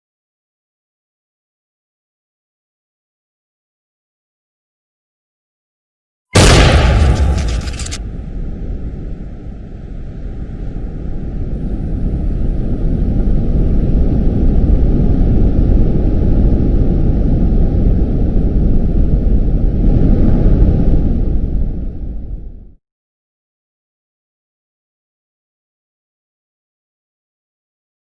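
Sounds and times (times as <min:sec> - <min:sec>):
explosion crack: 0:06.4 - 0:09.5, 0:19.8 - 0:21.8
deep rumble: 0:06.4 - 0:22.8.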